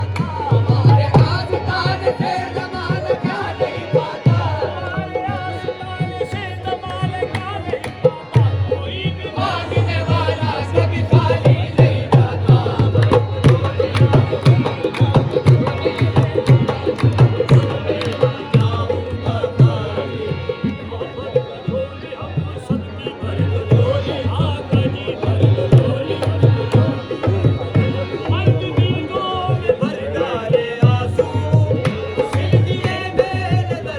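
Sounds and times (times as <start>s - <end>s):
hand drums beating: 9.4s - 19.9s.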